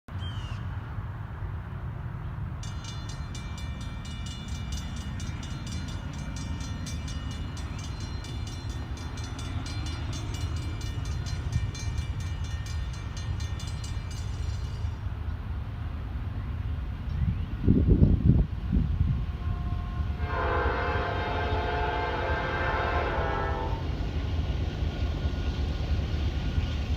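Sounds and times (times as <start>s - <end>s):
train rumbling: 0.1s - 26.9s
crossing warning bell ringing: 2.6s - 15.2s.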